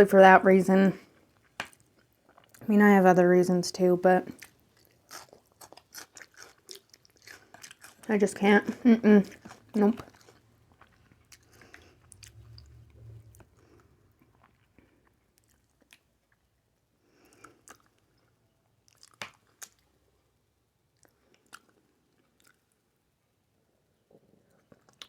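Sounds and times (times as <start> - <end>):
wet chewing clicks and smacks: 4.3 - 8.1, 9.2 - 13.4, 14.3 - 16.6, 17.2 - 20.0, 20.9 - 22.8, 24.5 - 25.0.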